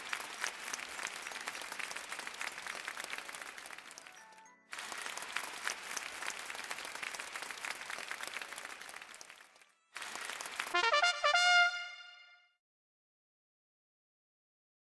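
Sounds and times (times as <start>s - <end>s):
dense clapping: 0.0s - 12.0s.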